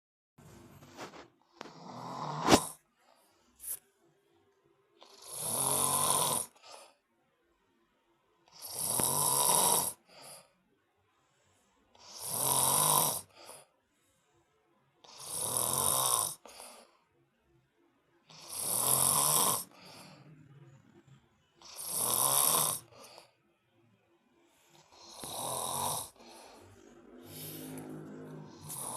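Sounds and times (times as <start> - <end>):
soft breath: 0.5 - 4.0, 6.5 - 7.2, 13.2 - 14.7, 16.4 - 17.2, 19.6 - 21.3, 26.0 - 28.9
man snoring loudly: 1.6 - 2.8, 5.0 - 6.6, 8.5 - 10.3, 12.0 - 13.6, 15.1 - 16.6, 18.3 - 20.4, 21.6 - 23.2, 24.8 - 28.9.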